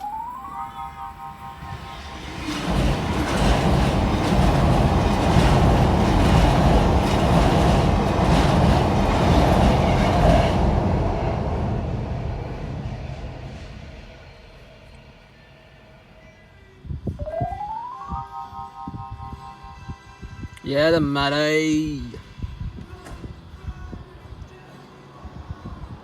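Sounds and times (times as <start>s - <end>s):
train wheels clattering on rails: 1.8s - 15.1s.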